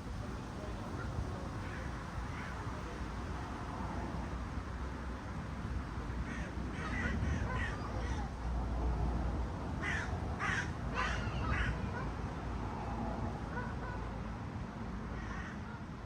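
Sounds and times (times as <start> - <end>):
crow cawing: 6.3 - 8.3, 9.8 - 12.0, 15.2 - 15.6.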